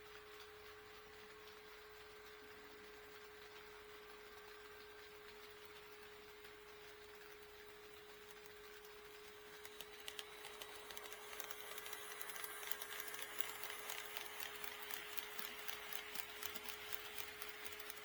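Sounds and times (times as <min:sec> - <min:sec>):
model train wheels clicking: 0:00.0 - 0:18.0.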